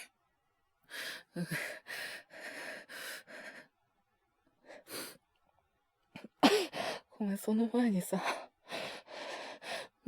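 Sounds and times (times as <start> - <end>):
man breathing quickly and shakily: 0.9 - 3.7, 8.2 - 10.0.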